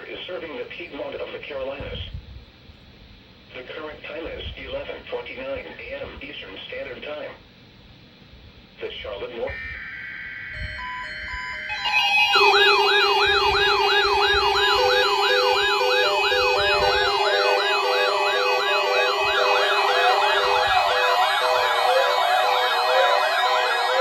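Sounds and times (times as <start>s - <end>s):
pulsing beep: 9.5s - 24.0s
rising and falling siren: 9.5s - 24.0s
steady tone: 9.5s - 24.0s.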